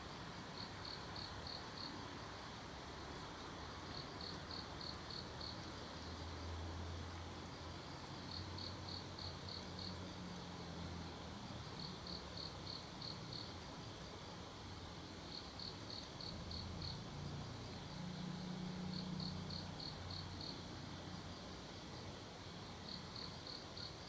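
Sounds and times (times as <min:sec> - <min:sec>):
background hiss: 0:00.0 - 0:24.0
crickets chirping: 0:00.2 - 0:02.0, 0:03.7 - 0:06.4, 0:07.8 - 0:10.2, 0:11.8 - 0:14.0, 0:15.3 - 0:24.0.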